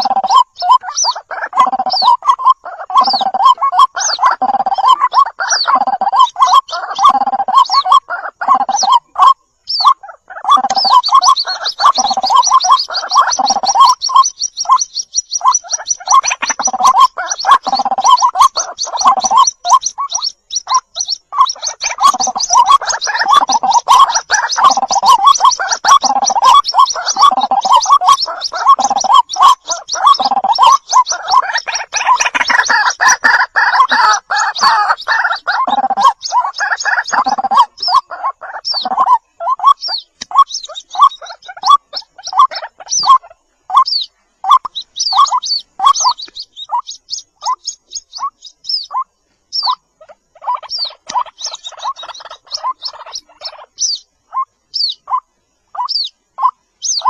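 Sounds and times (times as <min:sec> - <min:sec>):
waterhen gurgling croaks: 0:00.0 - 0:00.3.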